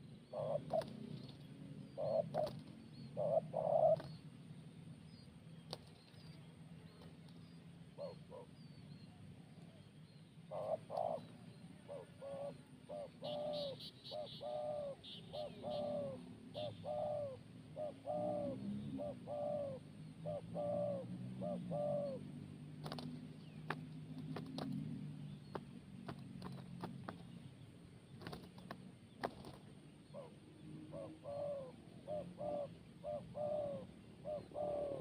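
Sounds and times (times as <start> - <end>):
bird hooting: 0.0 - 4.2, 7.9 - 8.8, 10.4 - 23.0, 30.1 - 35.0.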